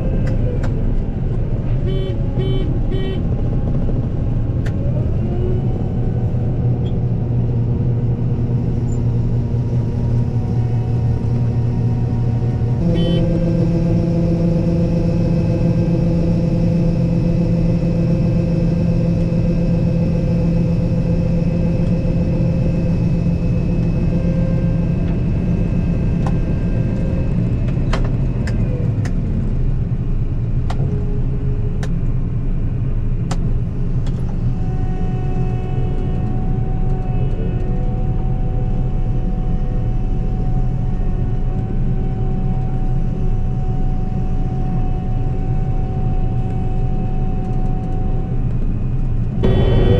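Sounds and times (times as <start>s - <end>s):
combine harvester running: 0.0s - 49.9s
machinery whining tones: 49.3s - 49.9s.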